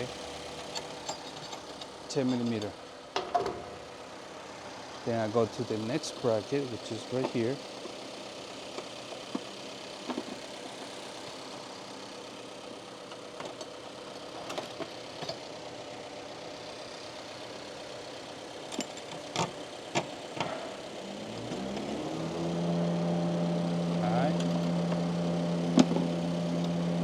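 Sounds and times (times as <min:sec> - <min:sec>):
car engine idling: 0:00.0 - 0:27.0
rising hum: 0:20.5 - 0:27.0.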